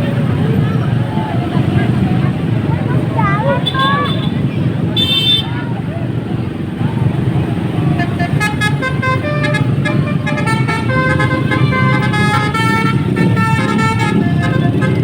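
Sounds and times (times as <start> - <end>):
bus engine rumble: 0.0 - 15.0
traffic: 0.0 - 15.0
bus horn playing a tune: 3.5 - 5.5, 7.8 - 15.0.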